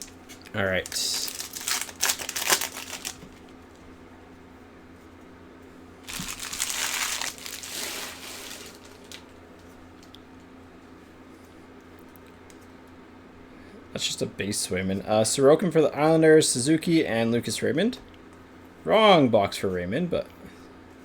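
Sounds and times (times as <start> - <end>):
foil wrapper tearing and crinkling: 0.7 - 3.5, 6.1 - 9.3.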